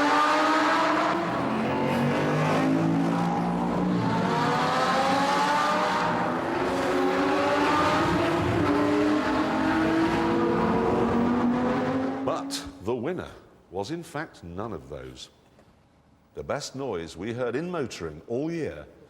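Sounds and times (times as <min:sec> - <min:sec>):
sports car engines accelerating: 0:00.0 - 0:12.6.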